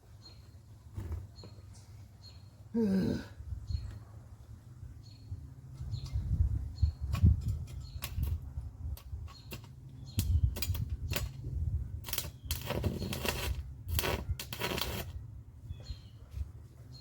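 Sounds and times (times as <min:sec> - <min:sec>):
welding arc crackling: 0:12.0 - 0:15.2.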